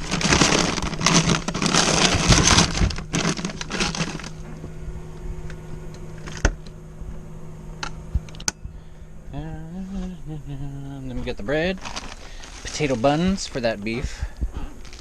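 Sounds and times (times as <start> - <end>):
items clicking and knocking: 0.0 - 4.4
packaging and bags crinkling: 0.0 - 4.6, 11.2 - 15.0
steady low hum: 0.0 - 15.0.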